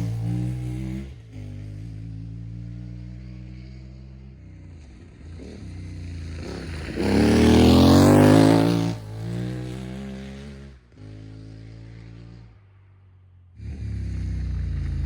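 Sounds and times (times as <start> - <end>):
motorcycle accelerating past: 0.0 - 12.7, 13.6 - 15.0.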